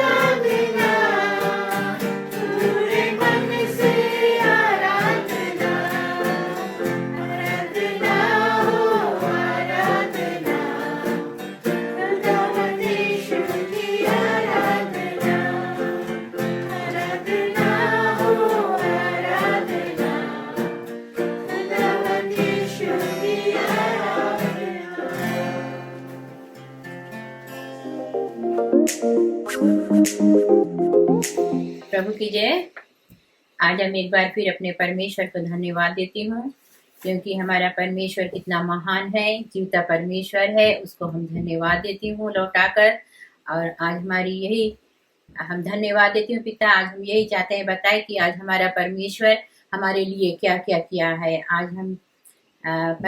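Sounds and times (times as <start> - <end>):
voices singing: 0.0 - 11.4, 12.0 - 20.9, 21.5 - 25.8
guitar: 0.0 - 32.0.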